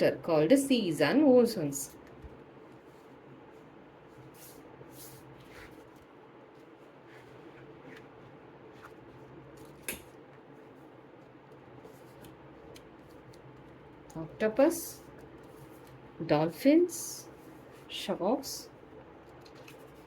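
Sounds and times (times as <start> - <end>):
low steady hum: 0.0 - 20.0
paper pages rustling: 1.9 - 14.4, 15.0 - 16.0, 19.1 - 20.0.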